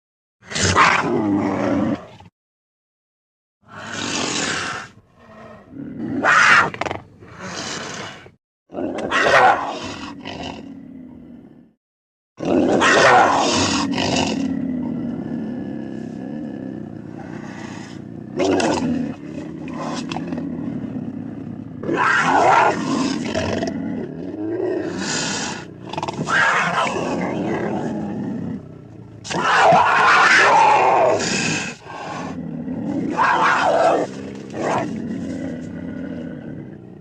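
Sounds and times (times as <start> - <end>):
creature snarling roars: 0.4 - 2.1, 3.7 - 11.6, 12.4 - 37.0
creature long growl: 12.4 - 37.0.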